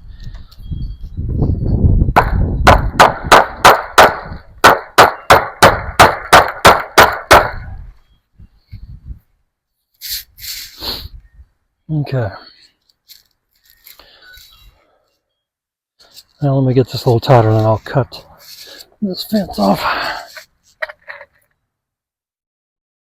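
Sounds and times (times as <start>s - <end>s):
hammer striking fence staples: 2.2s - 7.6s.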